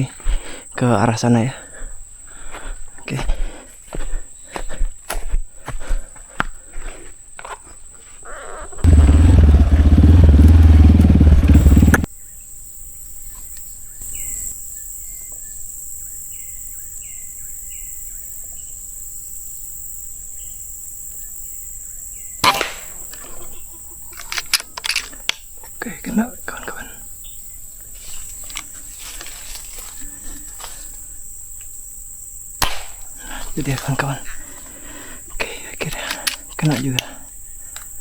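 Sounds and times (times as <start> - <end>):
high insect drone: 0.0 - 38.0
microphone wind rumble: 8.8 - 12.1
air rifle shot: 22.4 - 23.0, 32.6 - 33.1.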